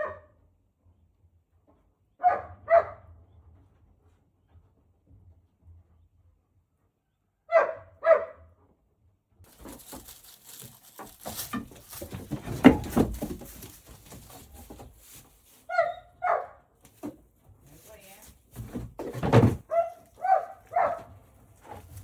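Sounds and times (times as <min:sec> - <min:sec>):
dog barking: 0:00.0 - 0:00.3, 0:02.2 - 0:03.1, 0:07.5 - 0:08.5, 0:15.7 - 0:16.7, 0:19.6 - 0:21.2
rustling and knocking: 0:09.5 - 0:15.9, 0:16.8 - 0:22.0.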